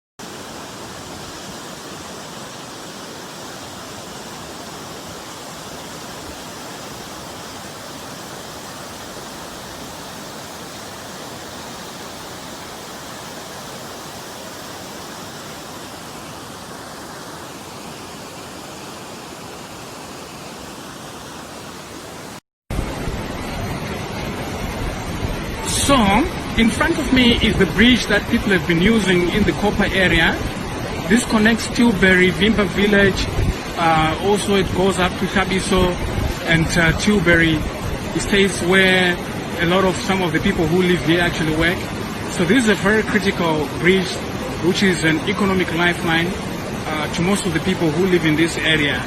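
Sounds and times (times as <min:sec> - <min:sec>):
floodwater rushing: 0:00.2 - 0:49.0
rough water rush: 0:00.2 - 0:49.0.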